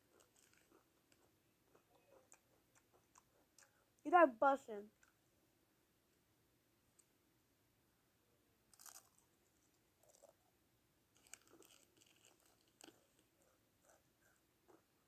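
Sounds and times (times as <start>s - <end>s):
crunchy chewing of food: 0.0s - 3.9s, 8.7s - 10.4s, 11.1s - 14.9s.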